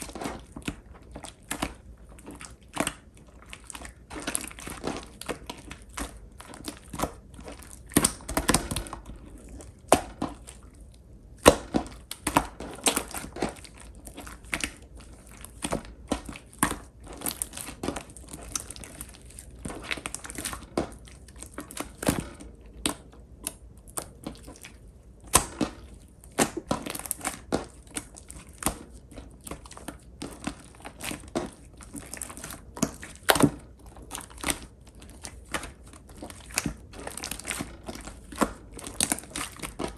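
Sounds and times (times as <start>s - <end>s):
slime crackling and popping: 0.0s - 39.9s.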